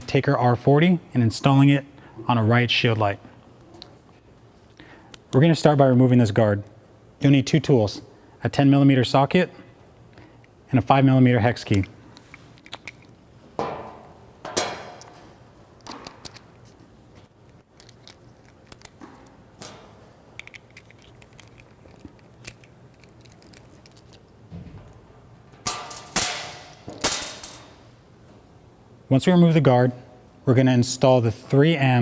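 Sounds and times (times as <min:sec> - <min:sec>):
metal clanks: 0:13.6 - 0:15.3, 0:25.5 - 0:27.8.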